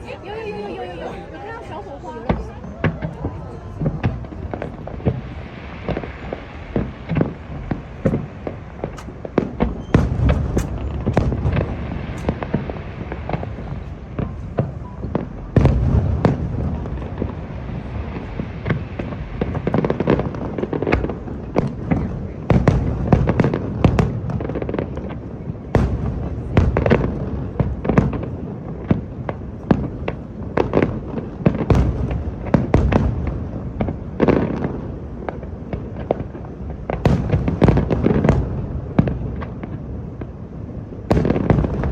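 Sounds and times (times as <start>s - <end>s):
firework shells bursting: 4.0s - 14.4s.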